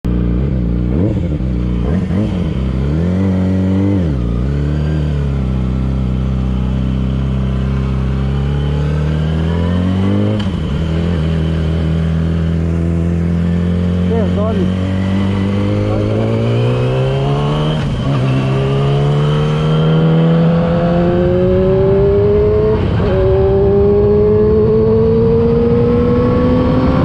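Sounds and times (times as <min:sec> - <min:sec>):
motorcycle engine revving: 0:00.1 - 0:27.0.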